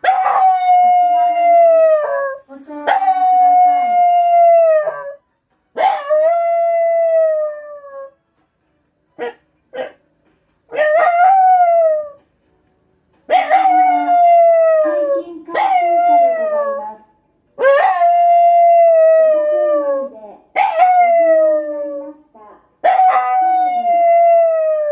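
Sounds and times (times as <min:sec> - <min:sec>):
dog howling: 0:13.3 - 0:17.0.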